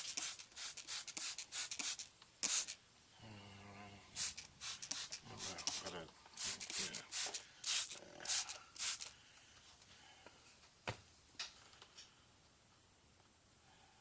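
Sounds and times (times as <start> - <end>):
spray bottle squirting: 0.0 - 2.8, 4.2 - 9.2.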